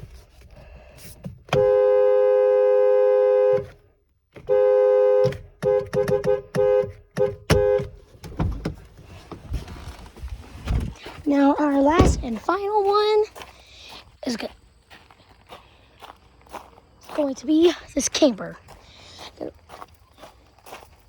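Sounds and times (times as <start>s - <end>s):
truck horn blasts and toots: 1.5s - 8.1s.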